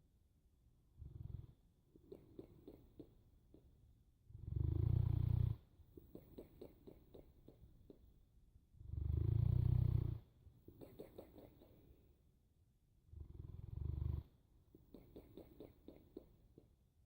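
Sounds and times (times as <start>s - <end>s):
dog snoring: 1.0s - 1.6s, 4.4s - 5.7s, 8.8s - 10.3s, 13.1s - 14.4s.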